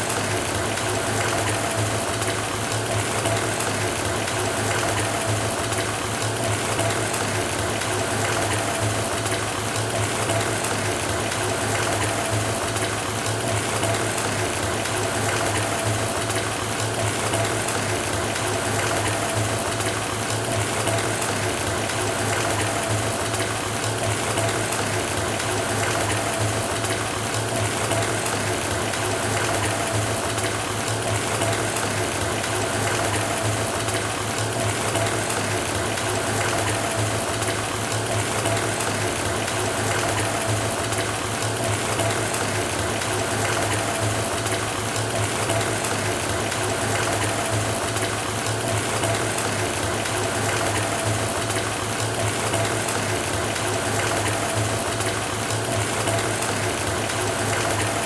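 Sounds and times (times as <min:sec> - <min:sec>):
water pouring into bathtub: 0:00.0 - 0:58.0.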